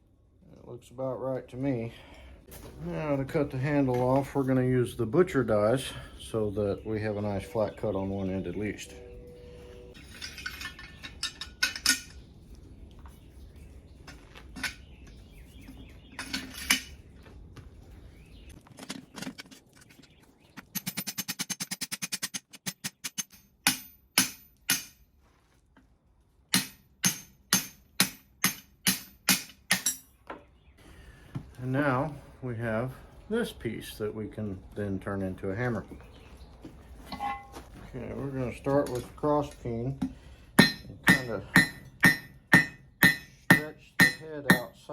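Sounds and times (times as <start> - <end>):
hammer striking metal: 22.8 - 25.0, 26.6 - 30.1, 40.6 - 44.8.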